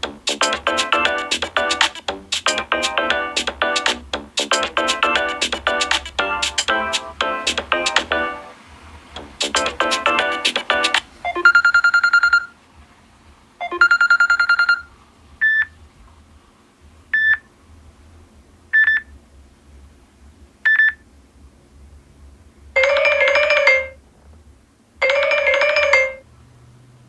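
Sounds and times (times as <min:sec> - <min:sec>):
buzzy electronic tones: 0:00.0 - 0:08.6
ringtone chime phrase: 0:02.5 - 0:08.5.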